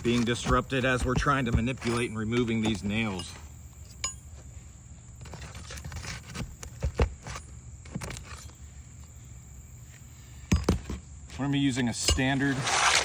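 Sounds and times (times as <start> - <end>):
pry tool scraping nails: 0.0 - 2.9.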